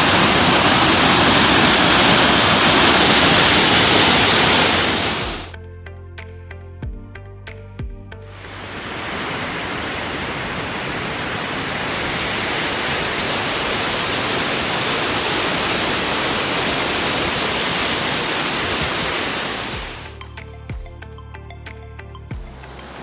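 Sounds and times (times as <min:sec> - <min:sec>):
waterfall rushing: 0:00.0 - 0:05.5, 0:08.3 - 0:20.2, 0:22.5 - 0:23.0.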